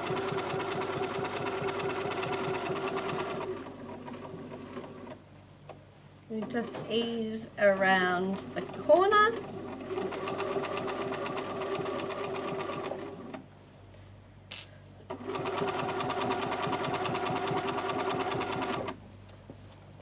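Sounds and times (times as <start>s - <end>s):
sewing machine stitching: 0.0s - 5.2s, 8.6s - 13.4s, 15.1s - 19.0s.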